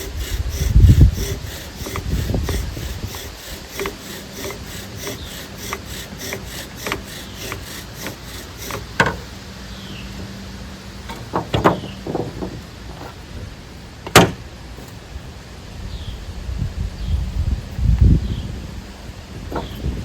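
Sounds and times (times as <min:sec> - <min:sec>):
bow drill spindle rubbing: 0:00.0 - 0:09.4
sharp knocks: 0:11.1 - 0:12.6.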